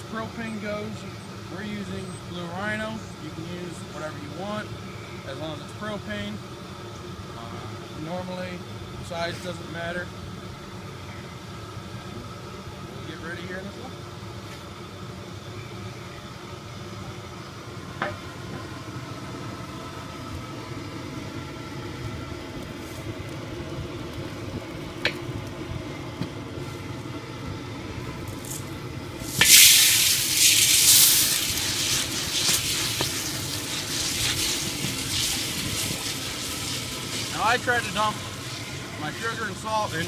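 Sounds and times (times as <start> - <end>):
propane burner running: 0.0 - 40.0
kernels sizzling in hot oil: 28.2 - 40.0.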